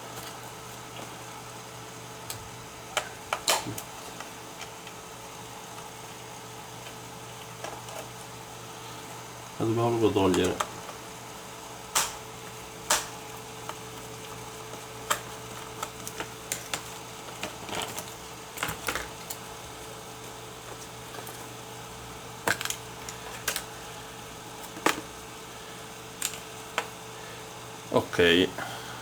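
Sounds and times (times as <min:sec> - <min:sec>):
faint steady hum: 0:00.0 - 0:29.0
plastic laptop casing clicks: 0:11.9 - 0:12.2, 0:12.9 - 0:13.2.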